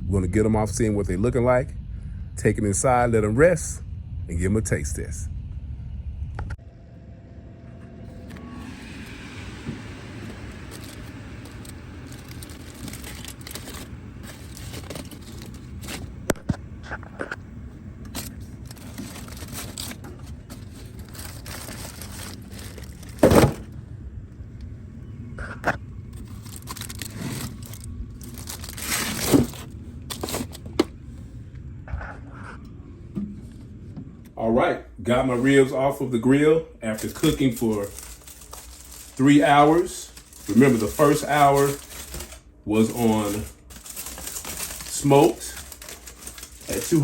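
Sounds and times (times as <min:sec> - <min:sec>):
loud foil rustles: 0:10.2 - 0:16.3, 0:18.0 - 0:23.8, 0:26.2 - 0:30.8, 0:36.8 - 0:47.0
aluminium foil crinkling: 0:10.2 - 0:17.4, 0:18.0 - 0:23.7, 0:26.2 - 0:30.7, 0:36.8 - 0:47.0.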